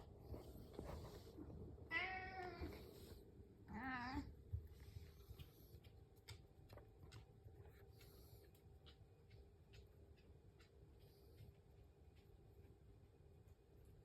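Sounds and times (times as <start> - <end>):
cat meowing: 1.9 - 2.8.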